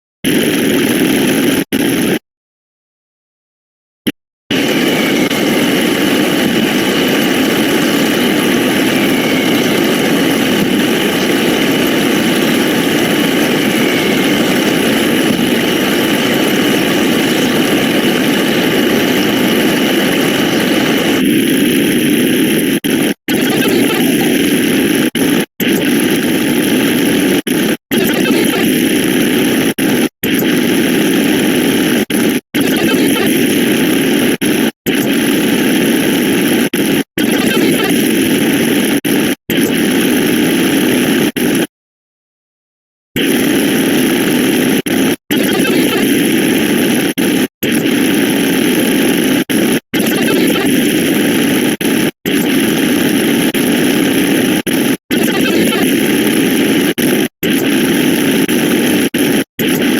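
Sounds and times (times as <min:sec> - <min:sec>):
harsh wall of layered noise: 0:04.5 - 0:21.5.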